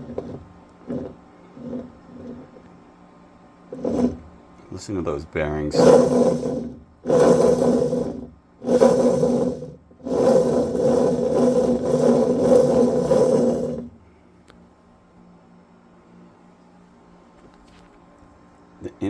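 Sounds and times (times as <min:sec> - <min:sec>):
washing machine bearings grinding: 0:00.0 - 0:02.9, 0:03.6 - 0:14.0.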